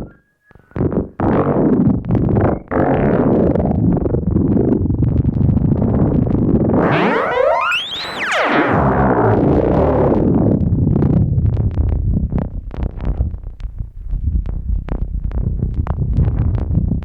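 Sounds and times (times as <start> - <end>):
short high synth blips: 6.8 - 9.1
low synthesizer drone: 6.8 - 10.2.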